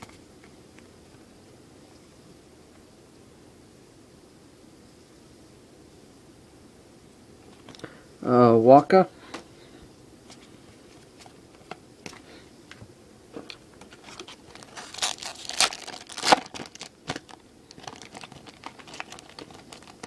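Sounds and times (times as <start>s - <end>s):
foil wrapper crinkling and tearing: 13.9s - 20.0s.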